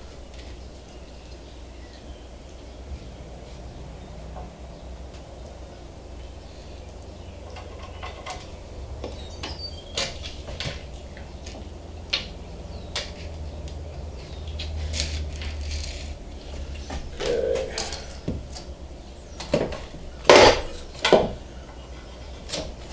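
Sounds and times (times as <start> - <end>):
steady low hum: 17.0 - 19.0.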